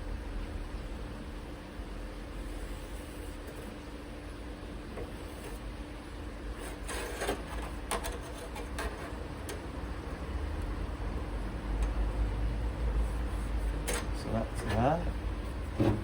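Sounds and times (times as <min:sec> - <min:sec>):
low background hum: 0:00.0 - 0:16.0
sheet metal clicks and scrapes: 0:06.6 - 0:09.6, 0:13.8 - 0:14.8.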